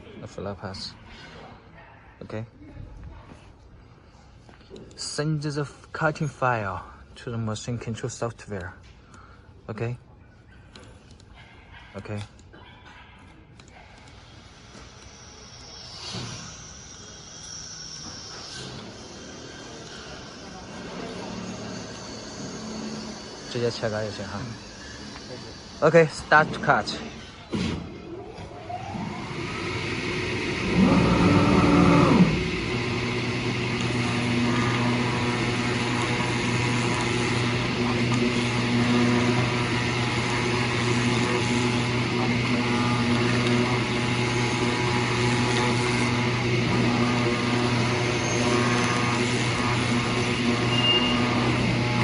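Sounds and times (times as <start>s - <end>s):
cutting machine humming: 28.8s - 52.0s.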